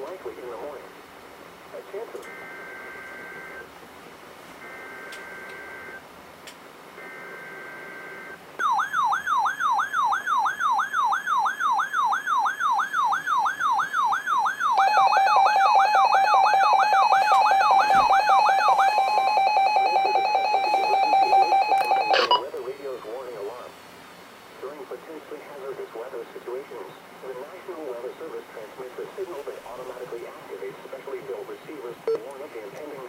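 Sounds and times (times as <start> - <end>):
sweeping alarm tone: 7.0 - 22.4.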